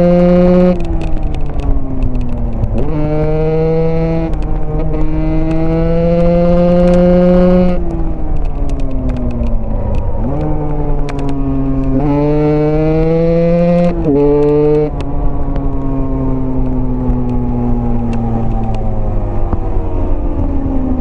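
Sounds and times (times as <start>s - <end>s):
dirt bike engine revving: 12.0s - 14.9s.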